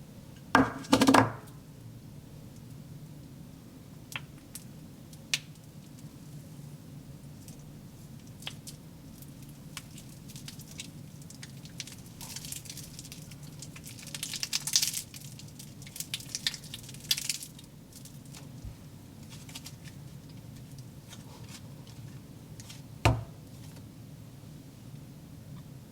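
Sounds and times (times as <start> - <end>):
thump: 23.1 - 23.3.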